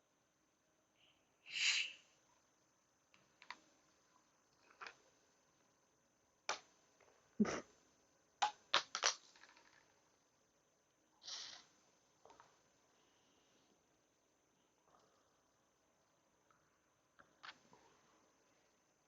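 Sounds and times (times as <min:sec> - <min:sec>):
short hiss: 0:01.5 - 0:02.0, 0:11.2 - 0:11.7.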